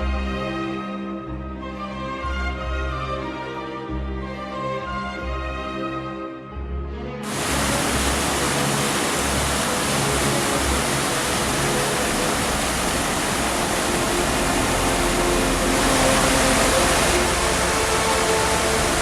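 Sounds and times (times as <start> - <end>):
mountain torrent rushing: 7.2 - 19.0.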